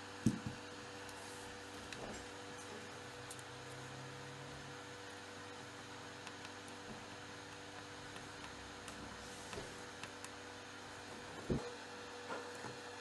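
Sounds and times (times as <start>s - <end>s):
electrical hum: 0.0s - 13.0s.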